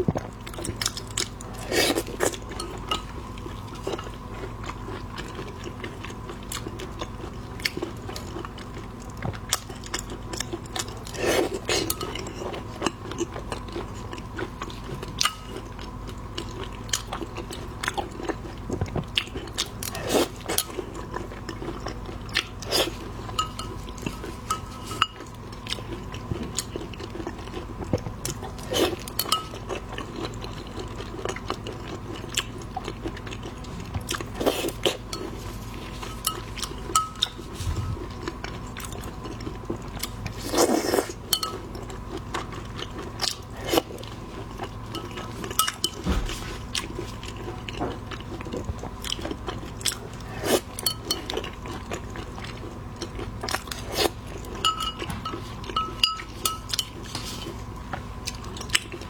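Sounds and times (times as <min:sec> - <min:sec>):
crunching and chewing: 0:00.0 - 0:59.0
dishes and utensils clinking: 0:23.3 - 0:25.3, 0:35.1 - 0:38.1, 0:41.3 - 0:41.7, 0:54.6 - 0:57.6.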